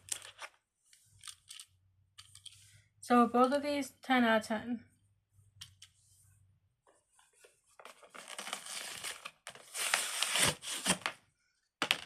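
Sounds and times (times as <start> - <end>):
plastic packaging crinkling: 7.8 - 11.1.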